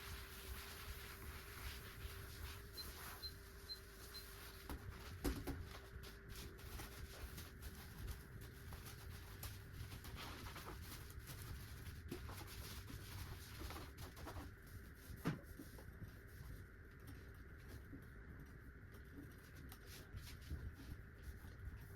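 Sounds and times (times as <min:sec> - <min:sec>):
faint clicks and taps: 0:04.6 - 0:21.9.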